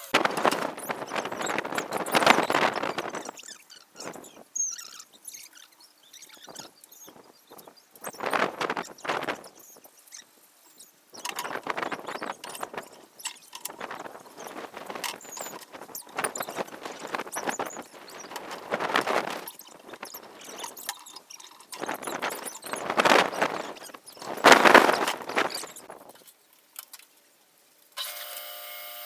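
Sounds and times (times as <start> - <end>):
scraping strokes: 11.2 - 26.0
small clicks and knocks: 11.2 - 27.2.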